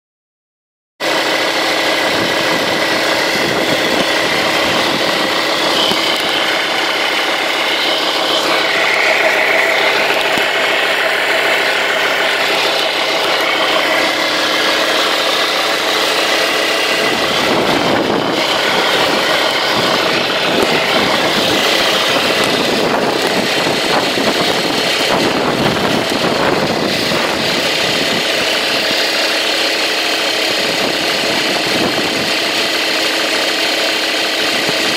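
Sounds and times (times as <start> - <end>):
diesel engine idling: 1.0 - 34.9
steady belt whine: 1.0 - 34.9.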